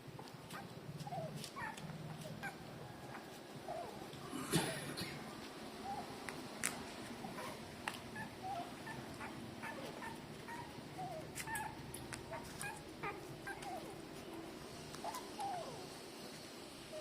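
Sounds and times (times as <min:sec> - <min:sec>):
puppies squeaking and whimpering: 0:00.2 - 0:04.1, 0:05.8 - 0:06.2, 0:07.2 - 0:14.4, 0:15.0 - 0:15.9.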